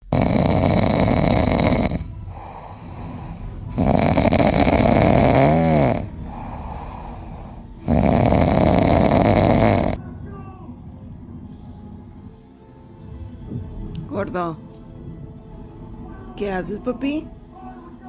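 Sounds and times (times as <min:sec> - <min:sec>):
loud snoring: 0:00.0 - 0:10.0
quiet breathing: 0:00.3 - 0:10.0, 0:10.7 - 0:13.9, 0:14.6 - 0:16.1, 0:17.2 - 0:18.0.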